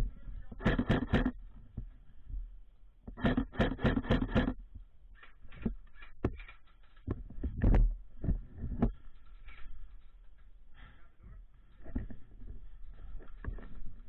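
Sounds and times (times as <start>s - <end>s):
faint rustling: 5.1s - 14.0s.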